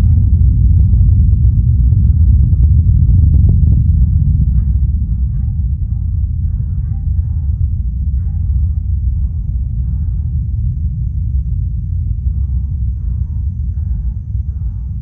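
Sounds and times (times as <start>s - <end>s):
distant rocket launch rumble: 0.0s - 15.0s.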